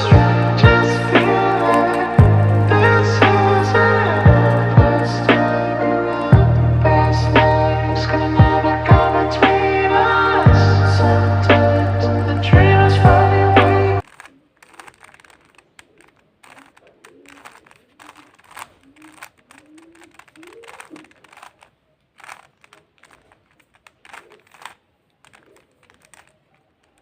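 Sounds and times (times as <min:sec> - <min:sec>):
music: 0:00.0 - 0:14.0
puzzle cube clicking: 0:00.0 - 0:27.0.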